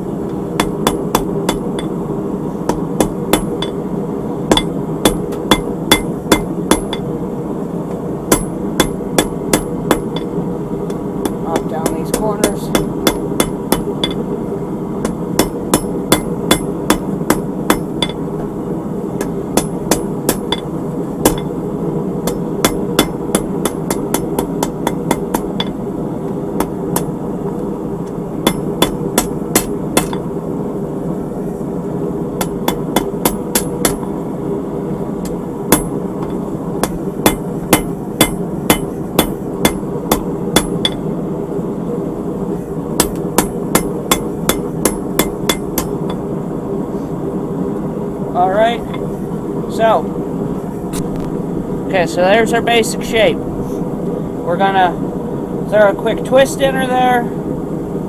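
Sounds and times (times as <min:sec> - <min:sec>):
steady background rush: 0:00.0 - 0:58.0
hammer striking steel on anvil: 0:00.3 - 0:02.0, 0:02.7 - 0:03.8, 0:04.5 - 0:07.1, 0:08.3 - 0:14.2, 0:15.0 - 0:18.3, 0:19.2 - 0:21.6, 0:22.2 - 0:25.8, 0:26.6 - 0:27.2, 0:28.4 - 0:30.3, 0:32.4 - 0:34.1, 0:35.2 - 0:41.0, 0:43.0 - 0:46.2.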